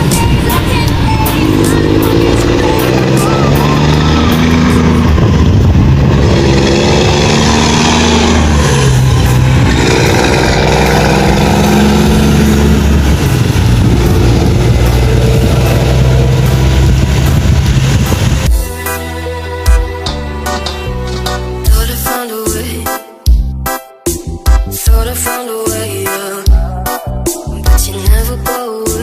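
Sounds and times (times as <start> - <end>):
truck diesel engine revving: 0.0 - 22.0.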